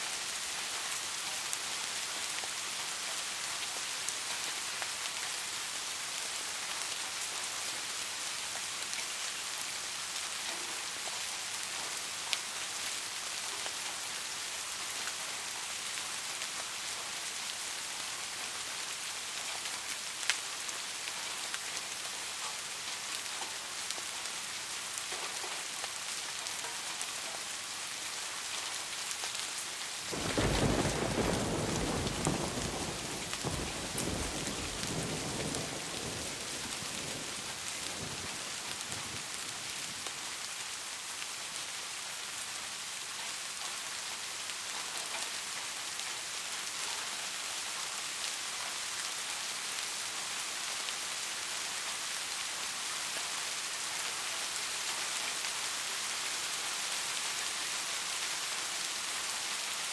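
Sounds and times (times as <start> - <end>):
steady rain: 0.0 - 59.9
thunder clap rumbling: 30.1 - 37.7.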